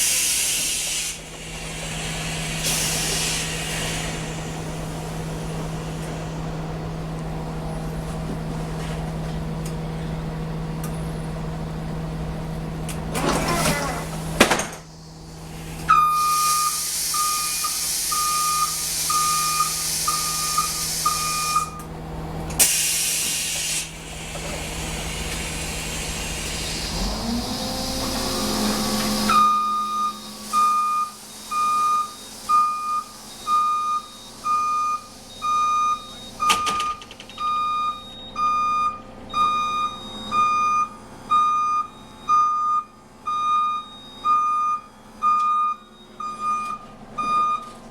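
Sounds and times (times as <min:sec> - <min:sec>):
short burst of air: 0:00.0 - 0:04.4, 0:22.6 - 0:24.0
loud hiss of air: 0:00.0 - 0:06.4, 0:14.8 - 0:21.7, 0:22.6 - 0:33.3
bus warning beeper pulsing: 0:15.9 - 0:21.9, 0:27.8 - 0:47.9.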